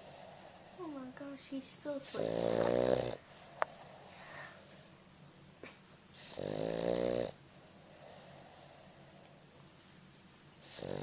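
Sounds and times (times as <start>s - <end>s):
dog snoring: 0.0s - 1.1s, 2.0s - 3.2s, 6.2s - 9.2s, 10.6s - 11.0s.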